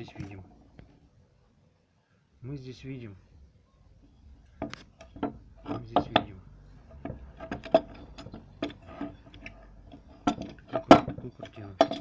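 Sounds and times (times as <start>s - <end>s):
metal parts clinking: 4.6s - 12.0s.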